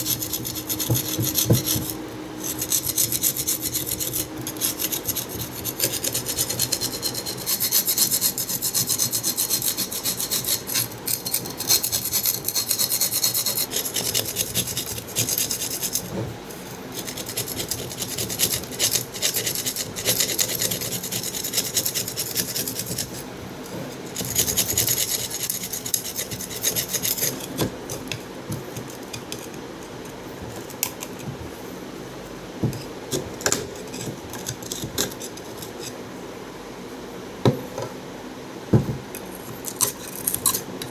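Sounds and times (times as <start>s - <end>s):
hand sanding strokes: 0.0s - 16.2s.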